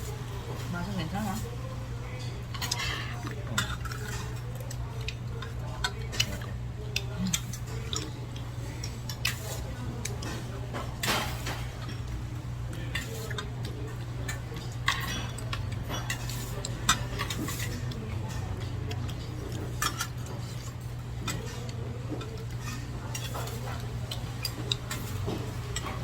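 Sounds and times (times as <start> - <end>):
cutlery clinking against dishes: 8.8 - 12.1, 12.8 - 26.0.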